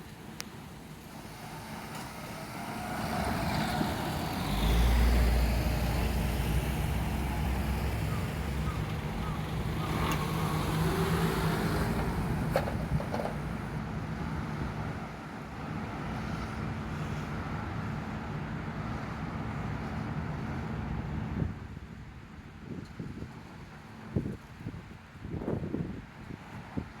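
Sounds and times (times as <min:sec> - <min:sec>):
wheels clacking on rails: 0:00.0 - 0:14.6
train rolling noise: 0:00.0 - 0:16.6
electric motors whining: 0:01.1 - 0:12.8.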